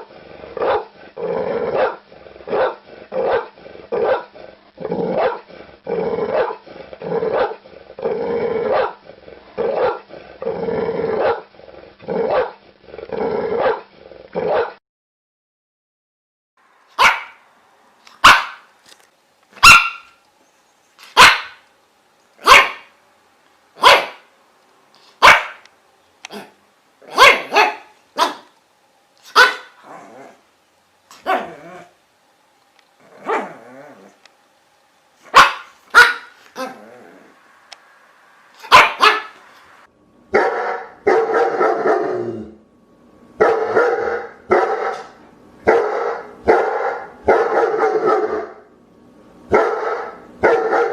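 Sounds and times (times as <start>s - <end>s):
dog barking: 0.6s - 0.9s, 1.7s - 4.3s, 5.2s - 5.5s, 6.3s - 6.6s, 7.3s - 7.6s, 8.7s - 9.0s, 9.6s - 10.1s, 11.2s - 11.5s, 12.2s - 12.6s, 13.6s - 14.8s, 17.0s - 17.4s, 18.2s - 18.7s, 19.6s - 20.2s, 21.1s - 21.6s, 22.4s - 22.9s, 23.8s - 24.3s, 25.2s - 25.7s, 26.3s - 28.6s, 29.3s - 29.8s, 31.2s - 31.6s, 33.2s - 33.6s, 35.3s - 36.8s, 38.6s - 39.4s, 40.3s - 42.1s, 43.4s - 48.6s, 49.5s - 50.9s.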